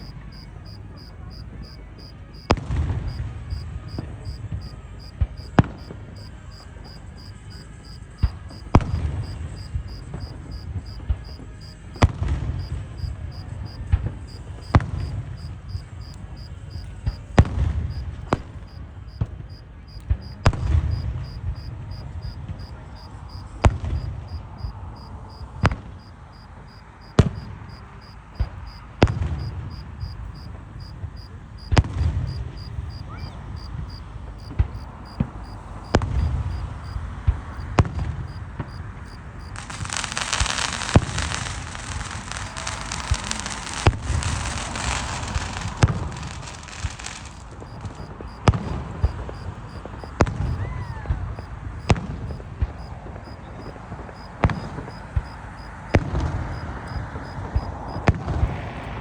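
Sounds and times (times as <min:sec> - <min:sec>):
crickets chirping: 0:00.0 - 0:02.5, 0:03.1 - 0:11.8, 0:12.6 - 0:58.1
rising firework whistle: 0:00.0 - 0:13.5, 0:32.3 - 0:52.0
firework bangs: 0:00.0 - 0:59.0
firework crackling: 0:00.0 - 0:59.0.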